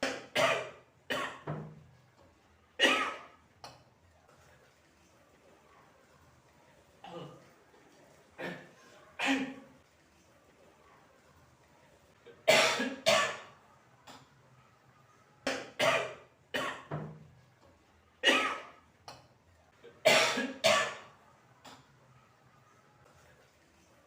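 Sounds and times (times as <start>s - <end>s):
person coughing hard: 12.4s - 13.4s, 20.0s - 21.0s.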